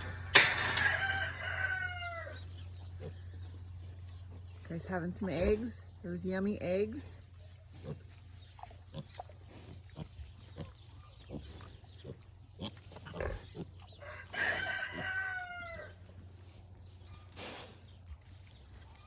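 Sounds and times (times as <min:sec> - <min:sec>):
pigs grunting: 0:07.7 - 0:15.4
chicken calling: 0:13.9 - 0:15.9.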